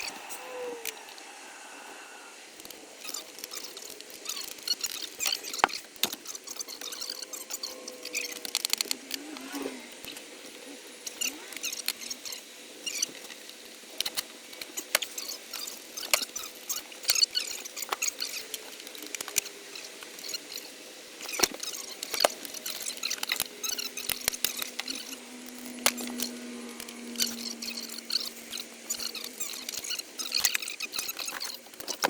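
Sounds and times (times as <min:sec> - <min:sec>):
faint steady hum: 0:00.0 - 0:32.0
small clicks: 0:02.6 - 0:32.0.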